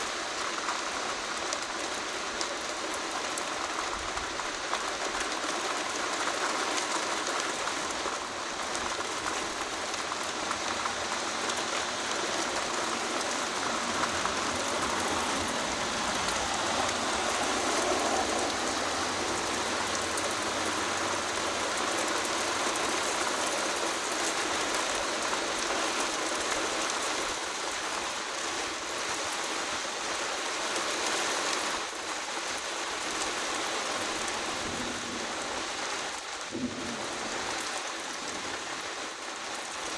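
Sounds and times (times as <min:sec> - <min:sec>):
rain hissing: 0:00.0 - 0:39.9.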